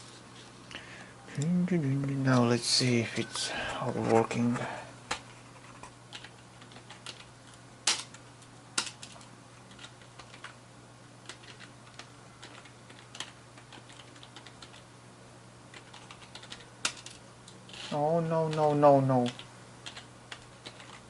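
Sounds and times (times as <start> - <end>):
steady low hum: 0.0 - 21.0
computer keyboard typing: 5.1 - 8.2, 8.8 - 10.6, 11.2 - 14.8, 15.7 - 17.2, 18.2 - 21.0.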